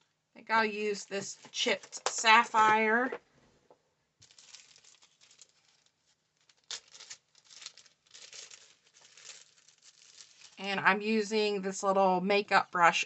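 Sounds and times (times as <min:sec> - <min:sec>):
paper rustling: 0:04.2 - 0:10.6.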